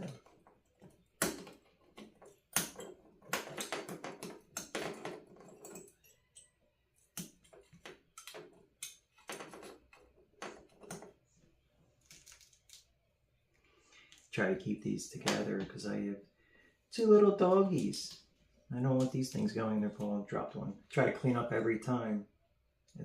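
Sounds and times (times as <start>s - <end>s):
rustling of small parts: 0.0s - 14.4s.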